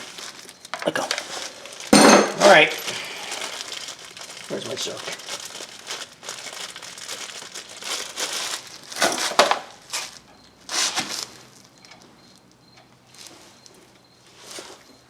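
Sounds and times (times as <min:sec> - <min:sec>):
loud packaging crunches: 0:00.0 - 0:11.8
plastic bag crinkling: 0:00.0 - 0:12.0.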